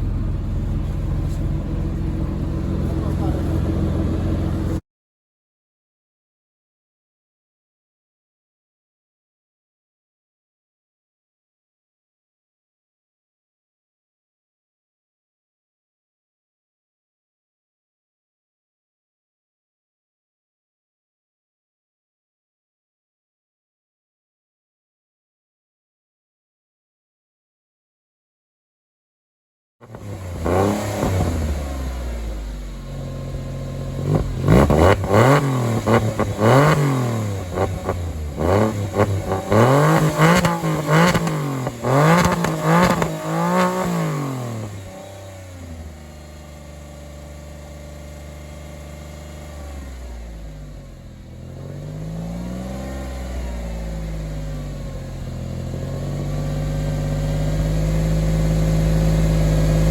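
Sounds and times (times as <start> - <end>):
car engine idling: 0.0 - 4.8, 29.9 - 52.2, 53.1 - 59.9
car engine revving: 0.0 - 4.8, 29.8 - 59.9.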